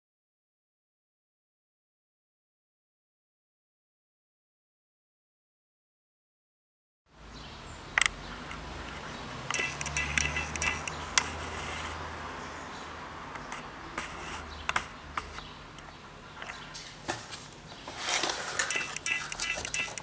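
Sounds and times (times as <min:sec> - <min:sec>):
plastic casing clicks and rattling: 0:18.2 - 0:20.0.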